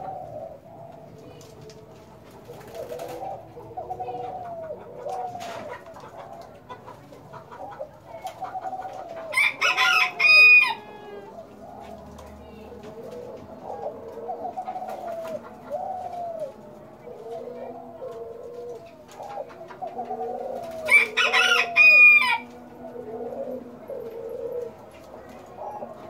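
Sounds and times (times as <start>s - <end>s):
dove cooing: 0.0s - 26.0s
rooster crowing: 9.2s - 11.3s, 20.8s - 22.7s.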